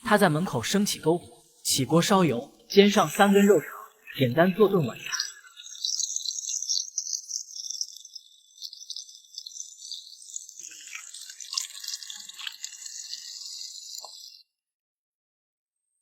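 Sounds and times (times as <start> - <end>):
sausages sizzling in oil: 2.7 - 14.4.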